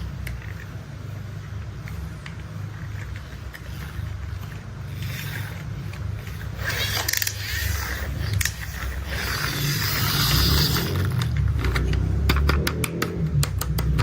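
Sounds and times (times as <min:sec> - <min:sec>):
plastic toy rolling rumble: 0:00.0 - 0:14.0
sharp plastic clicks: 0:11.0 - 0:14.0.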